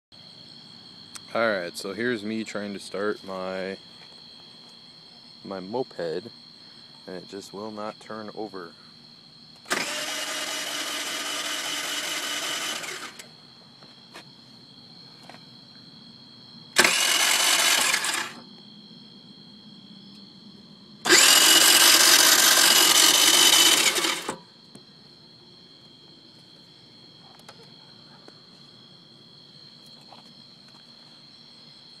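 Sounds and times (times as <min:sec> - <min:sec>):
electric starter cranking: 0:09.6 - 0:13.3, 0:16.8 - 0:18.4, 0:21.0 - 0:24.4.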